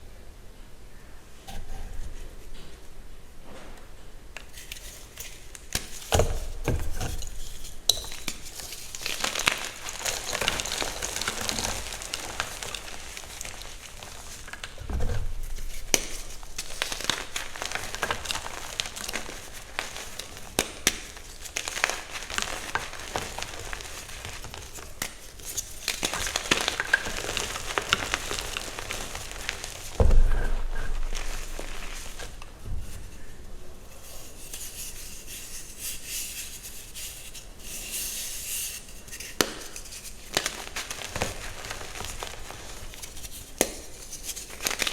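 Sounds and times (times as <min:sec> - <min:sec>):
chalk blocks crunching: 0:04.5 - 0:33.3, 0:39.1 - 0:44.9
dull thumps: 0:27.1 - 0:33.2.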